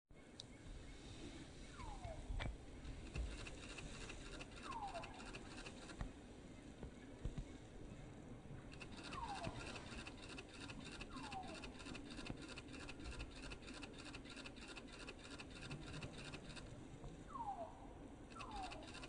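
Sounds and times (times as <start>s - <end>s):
insects ticking: 3.0s - 6.0s, 8.8s - 16.6s.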